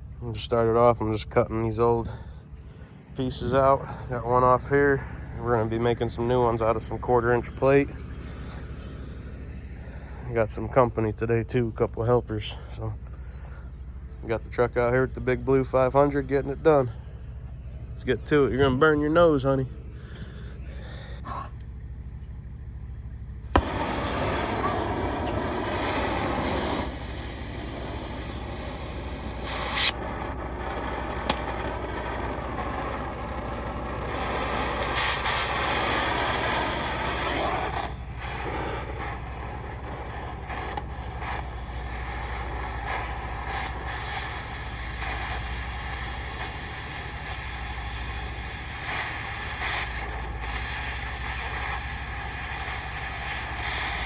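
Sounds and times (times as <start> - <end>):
diesel engine running: 0.0 - 54.0
welding arc crackling and hissing: 18.3 - 54.0
sharp clicks: 21.5 - 39.2.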